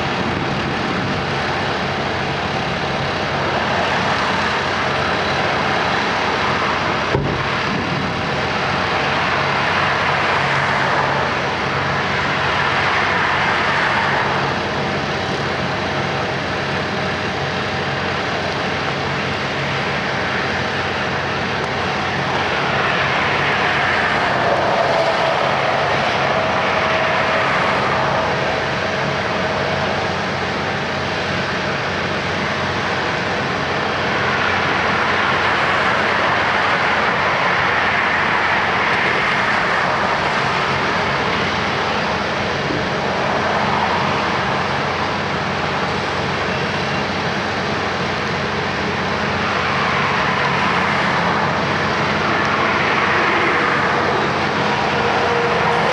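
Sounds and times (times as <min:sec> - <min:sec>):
diesel machinery engines running: 0:00.0 - 0:55.9.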